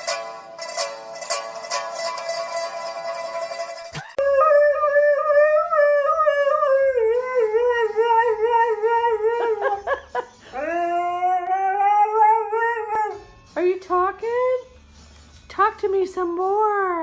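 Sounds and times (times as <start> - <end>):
dog howling: 4.2 - 9.8, 10.6 - 13.2.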